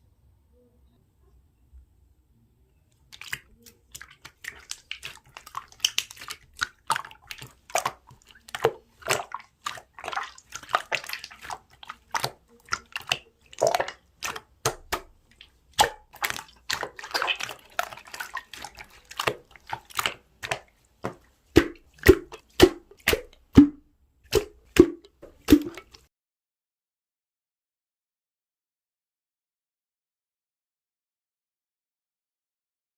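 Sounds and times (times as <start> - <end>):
slime wet clicking and squishing: 2.9 - 26.1
slime popping: 3.1 - 15.2, 15.8 - 25.9.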